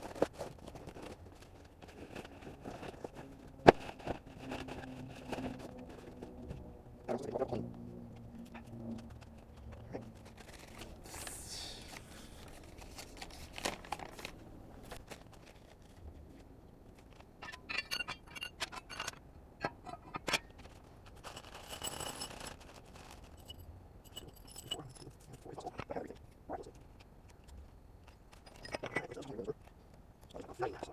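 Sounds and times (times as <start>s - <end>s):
small metal parts clicking and scraping: 17.0s - 26.2s, 27.0s - 30.4s
metal parts jingling: 17.4s - 19.2s, 21.2s - 25.4s, 28.3s - 29.1s.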